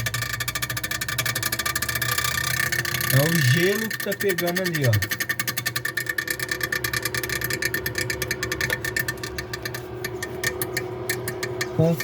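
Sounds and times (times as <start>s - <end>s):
fan blades striking ice: 0.0s - 12.0s.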